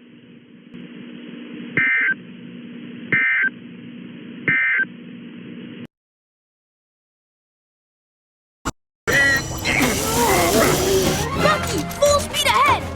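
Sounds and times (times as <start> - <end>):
buzzing two-tone data bursts: 9.1 - 11.4.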